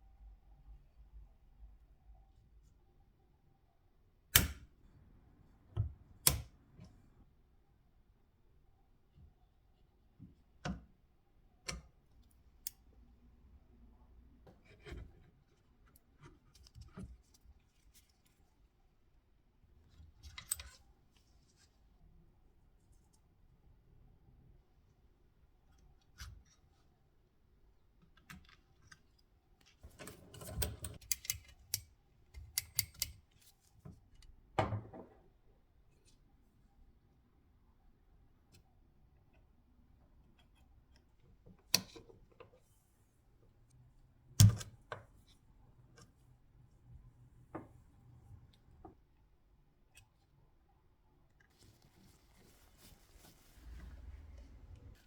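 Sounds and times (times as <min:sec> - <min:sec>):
object set down with a knock: 0:34.6 - 0:35.2.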